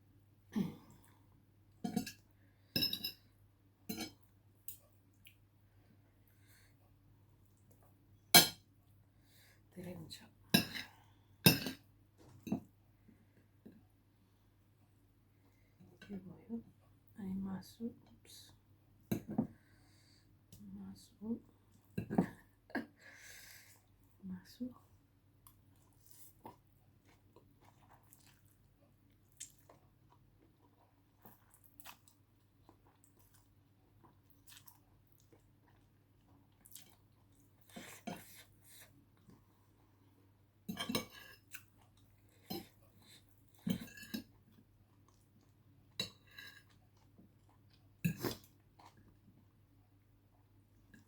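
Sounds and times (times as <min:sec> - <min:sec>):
person chewing food: 0:25.4 - 0:40.3.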